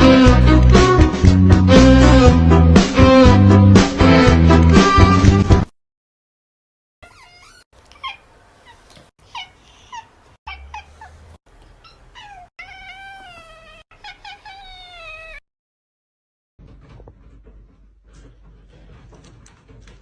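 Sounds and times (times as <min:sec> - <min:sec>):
cat meowing and yowling: 0:11.8 - 0:15.4.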